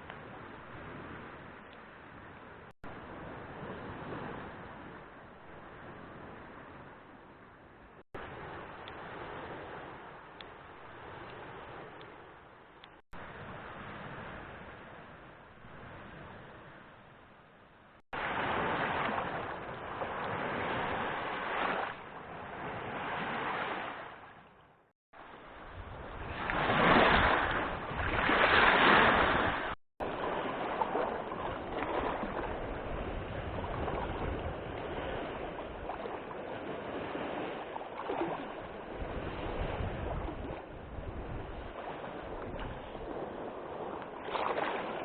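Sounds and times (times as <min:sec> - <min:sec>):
waves splashing: 0:00.0 - 0:07.1, 0:08.2 - 0:17.0, 0:18.1 - 0:24.4, 0:25.2 - 0:45.0
wind buffeting microphone: 0:25.5 - 0:45.0
wind gusting: 0:38.2 - 0:45.0.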